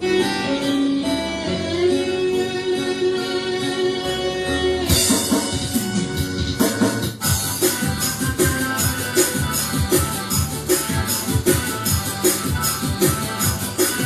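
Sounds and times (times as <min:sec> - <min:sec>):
drums and percussion: 0:04.9 - 0:14.0.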